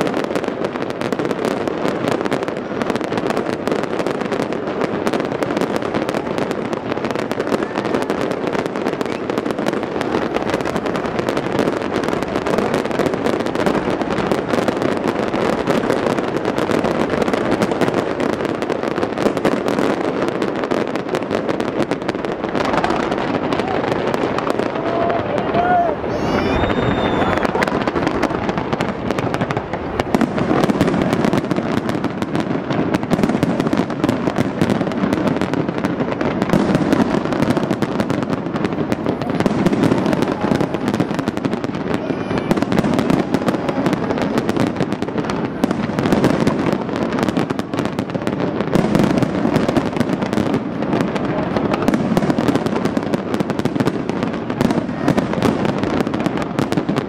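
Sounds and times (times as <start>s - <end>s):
fireworks bangs and crackles: 0.0s - 57.0s.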